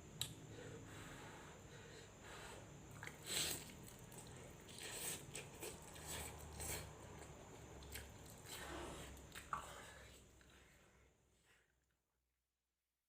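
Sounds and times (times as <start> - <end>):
wet chewing and mouth smacks: 2.9 - 9.7.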